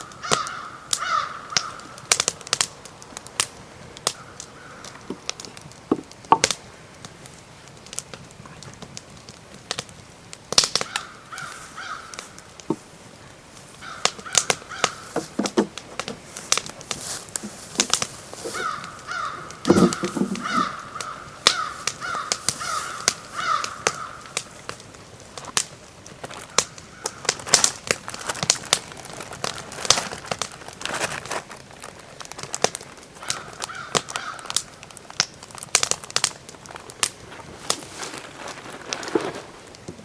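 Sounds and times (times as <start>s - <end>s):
bird calling: 0.0s - 2.1s, 4.1s - 6.5s, 10.7s - 24.8s
stick fire crackling: 0.0s - 40.0s.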